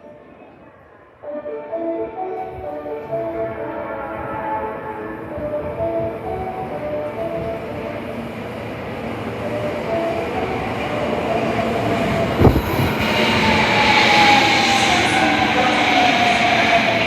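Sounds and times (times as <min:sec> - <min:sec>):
subway train running: 0:00.0 - 0:17.0
falling whine: 0:10.3 - 0:17.0
rising hiss: 0:12.4 - 0:17.0.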